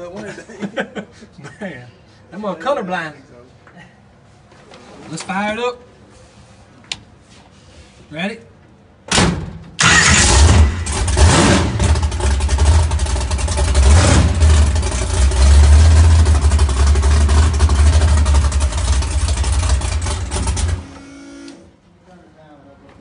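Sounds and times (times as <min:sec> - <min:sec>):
race engine running and revving: 0:10.1 - 0:20.8.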